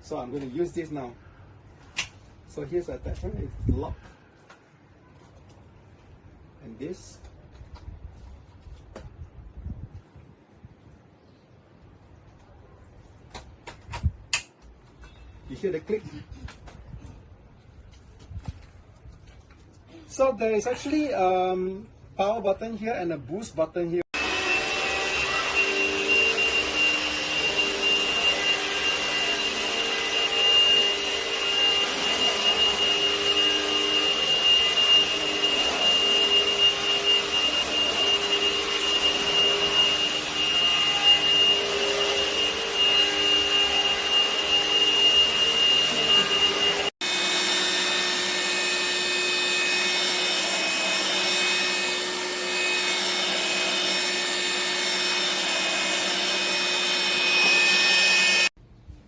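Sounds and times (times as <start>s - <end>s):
vacuum cleaner running: 24.2s - 58.5s.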